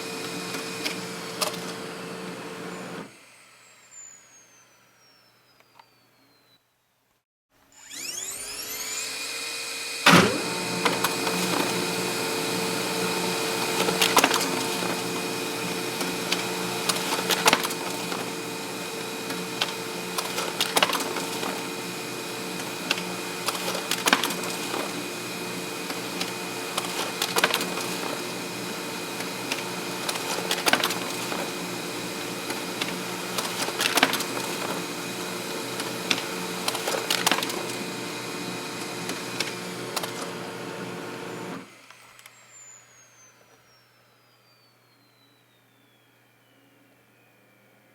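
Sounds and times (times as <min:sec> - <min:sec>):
printer motor hum and whine: 0:00.0 - 0:06.4, 0:07.8 - 0:43.9
printer clicks: 0:00.1 - 0:03.1, 0:13.4 - 0:41.6
printer sharp clack: 0:19.0 - 0:40.6.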